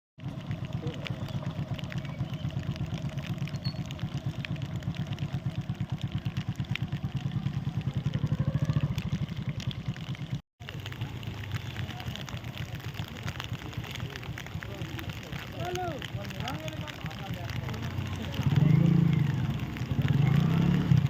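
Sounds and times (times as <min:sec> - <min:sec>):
engine running with fast pulsing: 0:00.2 - 0:10.4.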